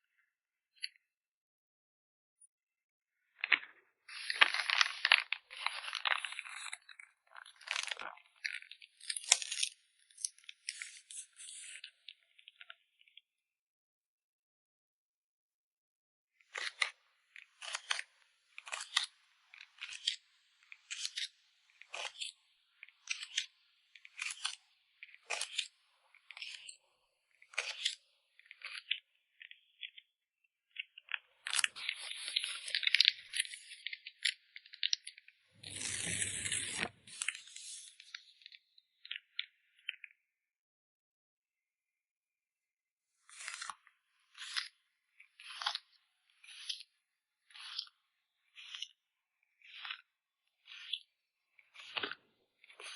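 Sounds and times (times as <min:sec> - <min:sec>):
packing material crinkling: 0:03.4 - 0:09.7, 0:35.6 - 0:37.8
packing material rustling: 0:35.6 - 0:37.4.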